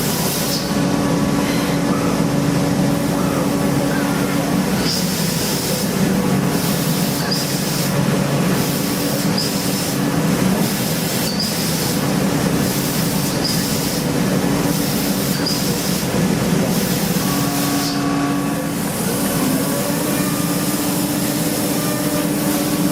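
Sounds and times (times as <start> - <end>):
machine tool cutting metal: 6.5 - 8.0, 10.6 - 14.1.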